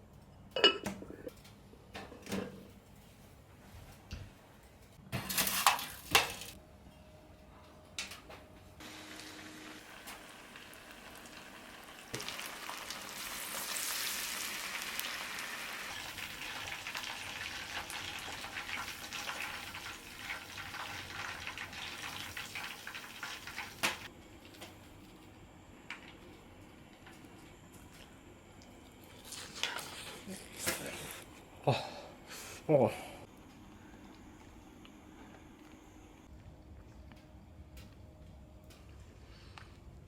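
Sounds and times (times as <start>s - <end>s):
food sizzling in hot oil: 8.8s - 24.1s.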